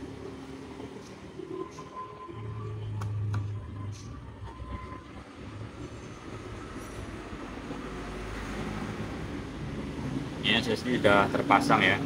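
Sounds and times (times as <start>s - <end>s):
low rumbling hum: 0.0s - 8.1s.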